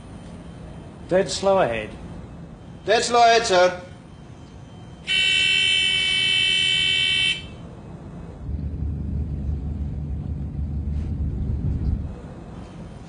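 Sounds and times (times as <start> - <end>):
telegraph alarm buzzing: 4.0 - 7.6
ship engine rumbling: 7.6 - 12.9.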